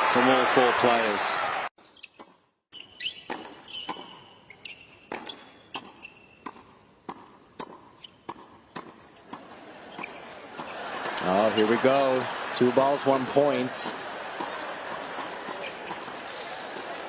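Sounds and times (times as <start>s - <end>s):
tennis ball bouncing on court: 2.0s - 11.2s, 14.3s - 16.2s
tennis racket hitting ball: 3.1s - 4.3s, 5.0s - 11.2s.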